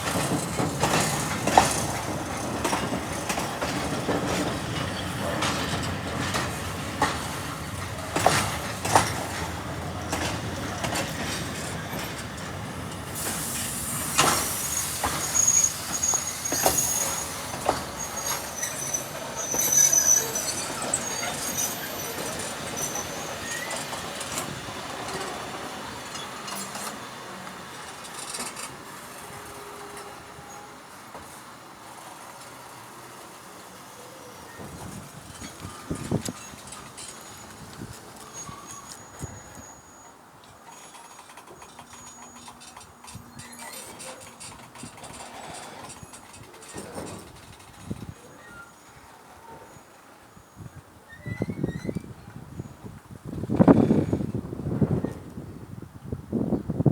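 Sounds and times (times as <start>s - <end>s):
train wheels rolling on track: 0.0s - 56.9s
high-pitched wheel squeal: 14.6s - 24.0s, 34.4s - 40.2s, 48.2s - 52.7s.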